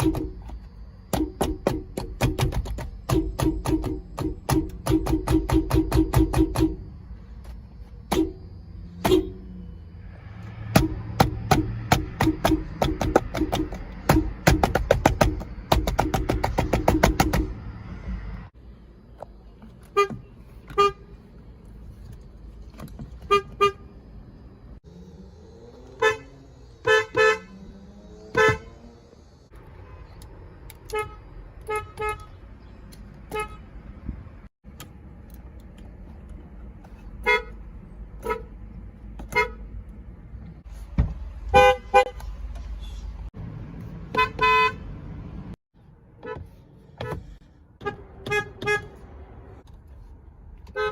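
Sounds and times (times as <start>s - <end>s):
car horns tooting: 3.0s - 6.9s, 8.1s - 9.6s, 19.8s - 21.2s, 23.1s - 24.0s, 25.9s - 27.6s, 28.2s - 29.0s, 29.7s - 32.4s, 33.2s - 33.8s, 37.2s - 38.6s, 39.2s - 39.7s, 41.4s - 43.2s, 44.0s - 45.0s, 46.2s - 49.2s, 50.7s - 50.9s.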